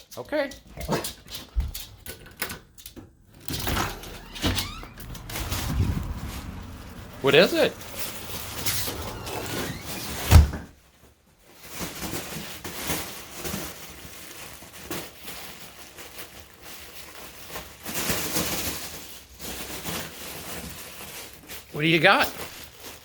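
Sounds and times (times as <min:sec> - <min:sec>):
loud thump: 0:03.7 - 0:10.7
dog tearing at a package: 0:11.5 - 0:21.7.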